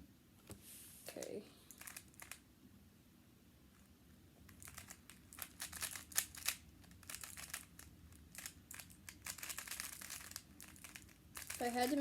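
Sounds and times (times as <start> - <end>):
puzzle cube plastic clicks: 1.7 - 2.4, 4.5 - 12.0.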